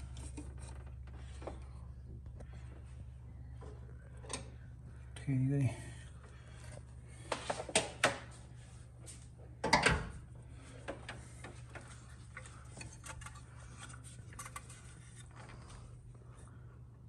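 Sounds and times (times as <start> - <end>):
steady low hum: 0.0 - 17.0
engine parts and tools clicking: 10.8 - 15.9.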